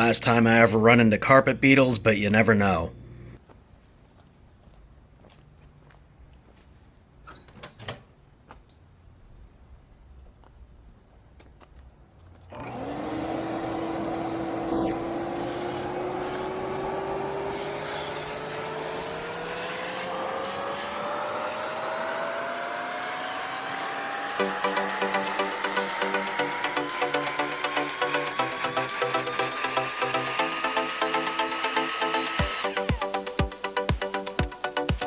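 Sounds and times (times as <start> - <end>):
vacuum cleaner motor whine: 12.5 - 34.2.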